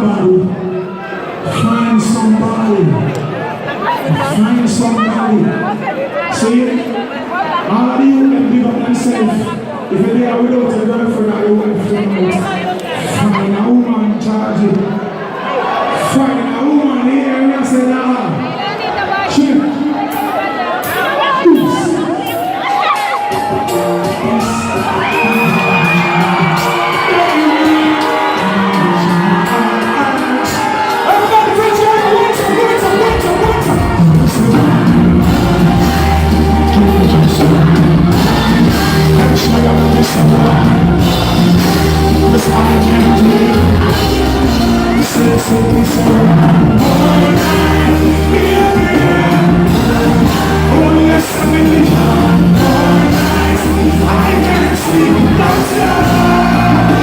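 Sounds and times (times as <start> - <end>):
live concert music: 0.0 - 57.0
crowd shouting and whooping: 14.9 - 57.0
person singing: 23.4 - 57.0
heavy bass line: 32.0 - 57.0.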